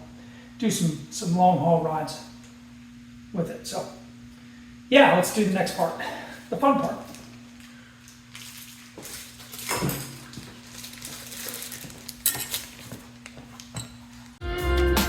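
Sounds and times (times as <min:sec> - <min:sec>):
faint steady hum: 0:00.0 - 0:14.4
metal tools clinking: 0:08.4 - 0:13.0, 0:13.7 - 0:14.2
electric guitar music: 0:14.4 - 0:15.0.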